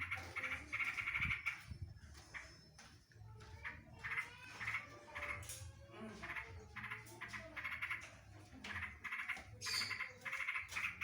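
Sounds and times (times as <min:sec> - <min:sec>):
bird chattering song: 0:00.0 - 0:05.6, 0:06.2 - 0:11.0.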